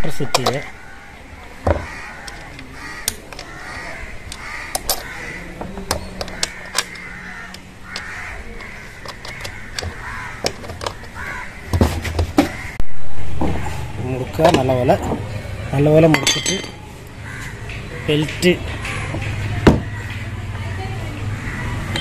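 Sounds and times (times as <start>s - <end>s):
bird calling: 0.1s - 12.8s
tools and metal parts clicking: 2.3s - 5.1s, 5.8s - 11.2s, 16.1s - 16.8s.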